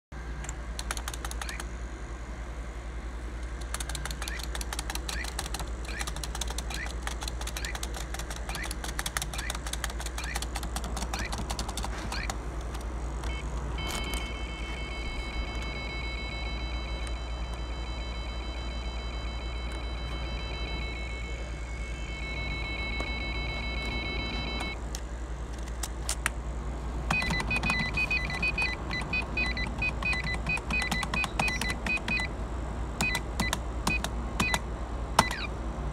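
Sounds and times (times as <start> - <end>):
rapid clicks: 0.4 - 1.7, 3.4 - 14.2
computer electronic chirps and beeps: 1.3 - 1.7, 3.8 - 12.4, 13.3 - 24.8, 27.1 - 32.3
high multi-tone whine: 1.3 - 24.9
low hum: 11.1 - 25.6.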